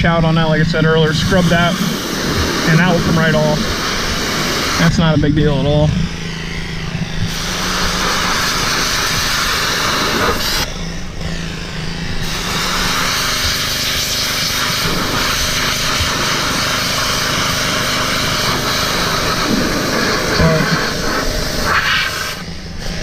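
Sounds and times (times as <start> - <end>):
pressure washer motor drone: 0.0 - 23.0
hiss of water jet: 1.2 - 4.9, 7.3 - 10.7, 12.2 - 22.4.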